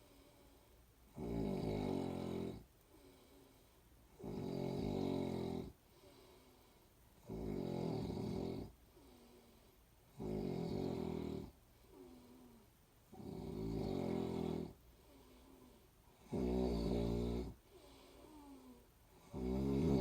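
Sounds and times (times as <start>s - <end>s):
person breathing quietly: 0.0s - 1.0s, 2.8s - 4.1s, 5.8s - 7.1s, 8.8s - 10.0s, 11.5s - 12.8s, 14.7s - 16.3s, 17.5s - 19.3s
person snoring: 1.1s - 3.2s, 4.2s - 6.3s, 7.2s - 9.4s, 10.1s - 20.0s.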